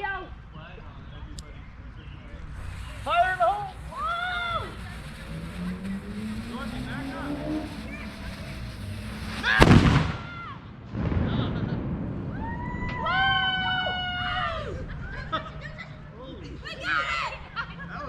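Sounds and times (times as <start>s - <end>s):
people whooping and yelling: 2.6s - 10.7s, 12.3s - 18.0s
cannon blast: 4.8s - 14.0s.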